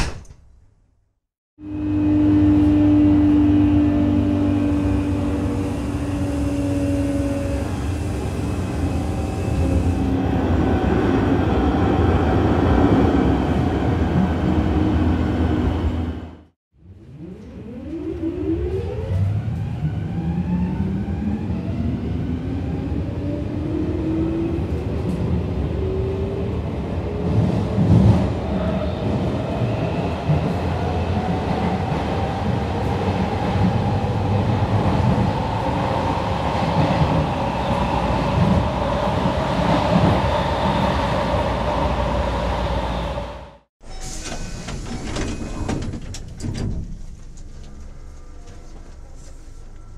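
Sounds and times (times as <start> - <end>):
loud knock: 0.0 - 0.7
wheel and track rumble: 31.2 - 49.9.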